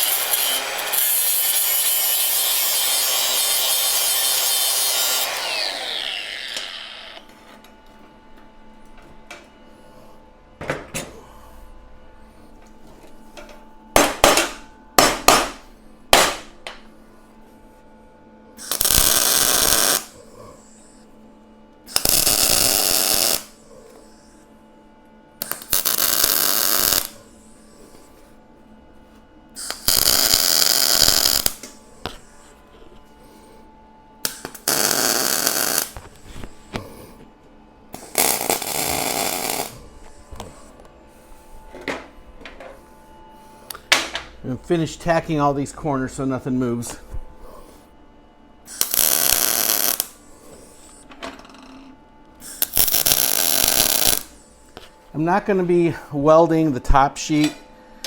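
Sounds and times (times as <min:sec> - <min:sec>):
welding arc crackling: 0:00.0 - 0:07.2, 0:18.6 - 0:20.2, 0:21.9 - 0:23.5, 0:25.4 - 0:27.2, 0:29.6 - 0:31.7, 0:34.2 - 0:36.0, 0:38.0 - 0:39.8, 0:48.7 - 0:50.2, 0:52.5 - 0:54.3.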